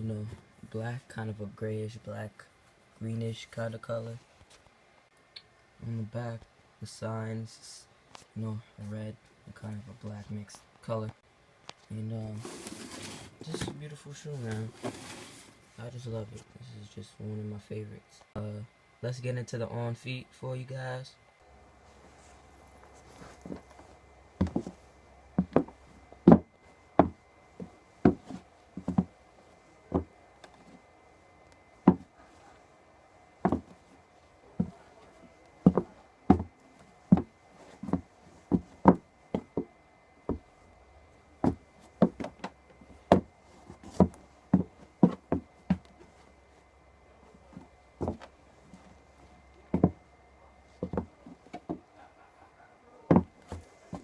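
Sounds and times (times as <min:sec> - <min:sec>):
sneaker footsteps: 0:21.8 - 0:30.9, 0:31.6 - 0:32.6, 0:33.4 - 0:40.7, 0:41.4 - 0:46.6, 0:47.4 - 0:50.1, 0:50.7 - 0:52.0, 0:53.1 - 0:54.0.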